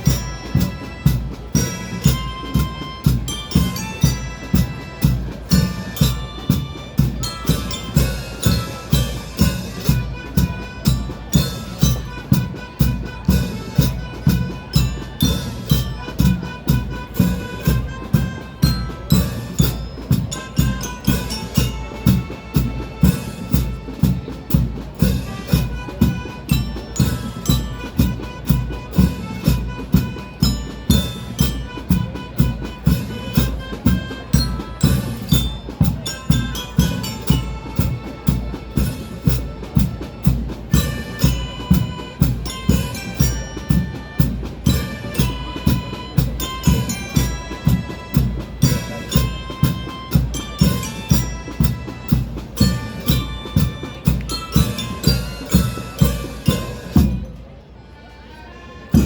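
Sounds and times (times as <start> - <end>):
marching band playing: 0.0 - 59.0.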